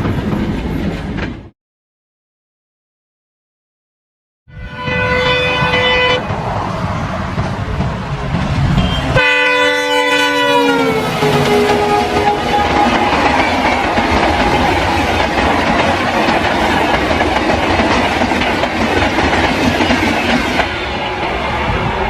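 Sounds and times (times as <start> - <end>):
train horn: 4.5 - 6.3, 8.8 - 13.7
train wheels clattering over rail joints: 11.2 - 20.7.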